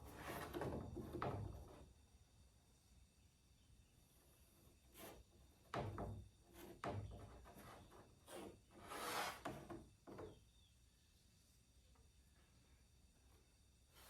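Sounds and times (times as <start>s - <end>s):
wood scraping rub: 4.9s - 5.3s, 6.5s - 9.7s.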